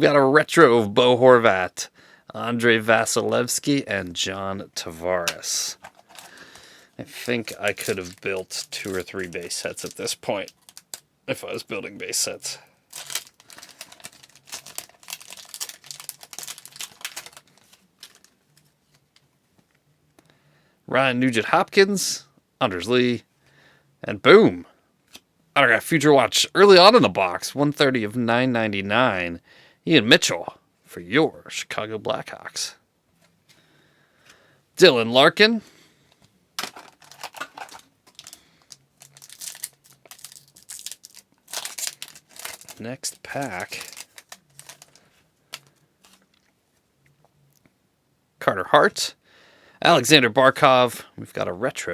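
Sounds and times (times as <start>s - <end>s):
wrapper tearing: 5.2s - 18.7s, 36.6s - 46.4s
foil wrapper crinkling: 5.2s - 19.2s, 36.6s - 46.4s.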